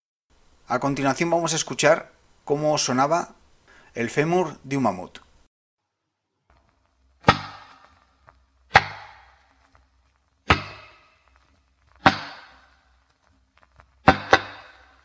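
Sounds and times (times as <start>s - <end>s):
bone struck as percussion: 7.2s - 7.9s, 8.7s - 9.4s, 10.5s - 11.1s, 12.0s - 12.7s, 14.0s - 15.0s.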